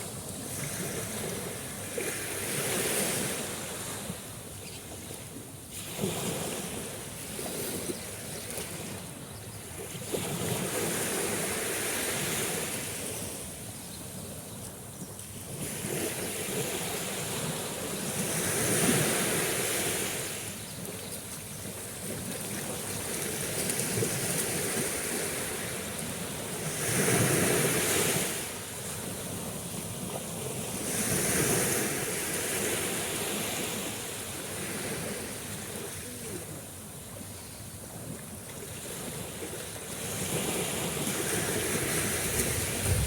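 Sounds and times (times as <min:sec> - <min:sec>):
sea waves rushing in: 0:15.6 - 0:20.6, 0:22.5 - 0:36.5, 0:39.0 - 0:43.0.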